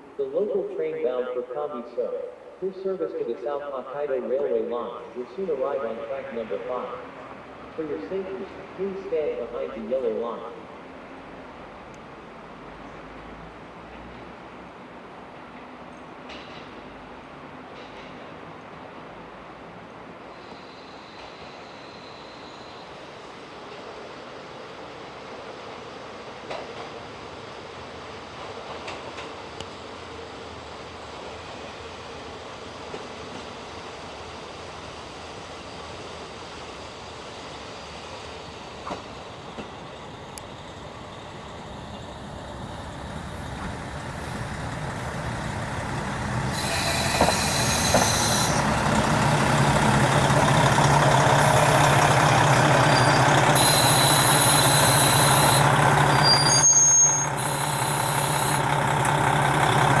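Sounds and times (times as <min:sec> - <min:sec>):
railcar diesel engine running: 0:00.0 - 1:00.0
brake squeal: 0:20.4 - 0:23.0, 0:41.8 - 1:00.0.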